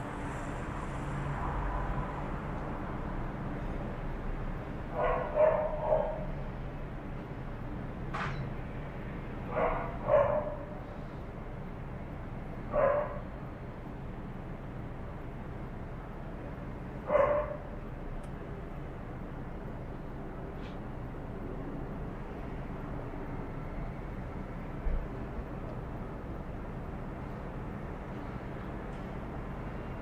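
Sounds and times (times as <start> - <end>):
dogs barking: 5.0 - 6.3, 9.5 - 10.8, 12.7 - 13.2, 17.1 - 17.7.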